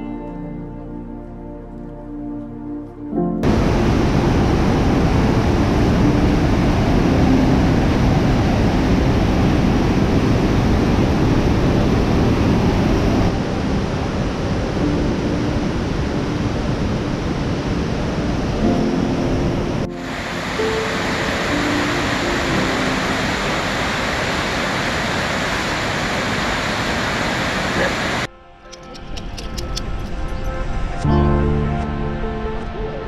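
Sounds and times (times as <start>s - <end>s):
waterfall roaring: 3.4s - 28.3s.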